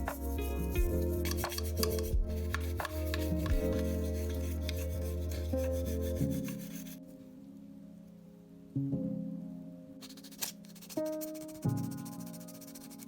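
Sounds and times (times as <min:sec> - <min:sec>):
background music with drone: 0:00.0 - 0:10.0
rubbing and scraping small part: 0:01.2 - 0:05.6.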